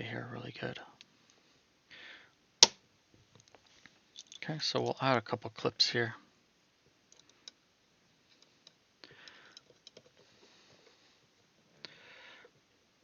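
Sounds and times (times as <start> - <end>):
faint clicks of metal clips: 4.2 - 4.5, 7.1 - 7.6.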